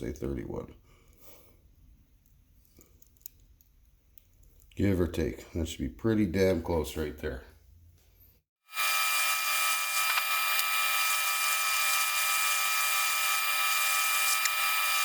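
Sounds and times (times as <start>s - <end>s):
metal lathe cutting steel: 8.8s - 15.0s.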